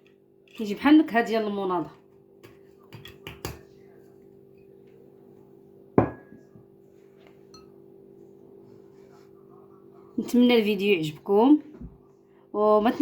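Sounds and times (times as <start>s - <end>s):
faint steady hum: 0.0s - 13.0s
glass clinking: 6.0s - 6.6s, 7.5s - 7.8s.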